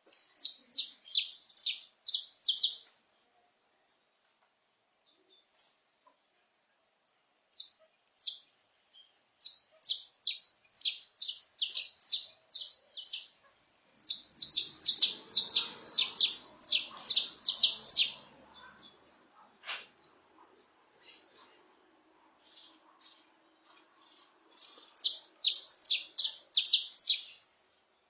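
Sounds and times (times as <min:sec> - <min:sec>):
finch singing high chirps: 0:00.0 - 0:02.9, 0:07.6 - 0:19.2, 0:21.0 - 0:27.7.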